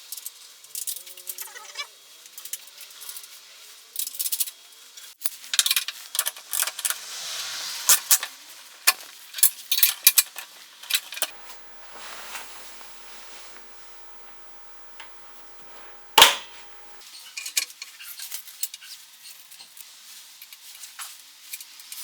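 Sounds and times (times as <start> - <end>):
hiss-like rustle: 0.0 - 14.6, 17.9 - 22.0
small hard parts clicking: 5.2 - 7.0.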